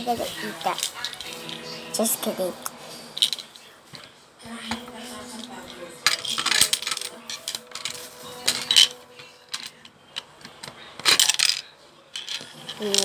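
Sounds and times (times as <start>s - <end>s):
small pieces rattling in plastic: 0.4s - 1.6s, 5.4s - 9.8s, 10.5s - 13.0s.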